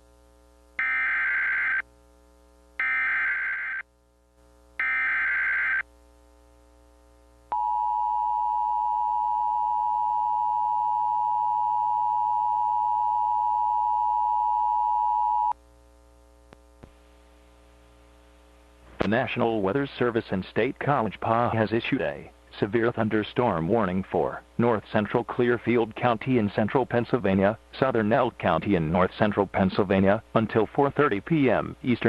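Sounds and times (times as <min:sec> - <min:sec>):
faint steady hum: 0:00.0 - 0:32.0
steady attention tone: 0:07.5 - 0:15.6.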